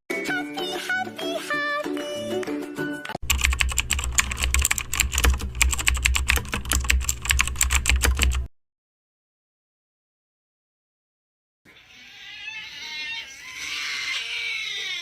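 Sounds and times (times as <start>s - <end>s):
music: 0.1s - 3.2s
fast typing on a keyboard: 3.2s - 8.5s.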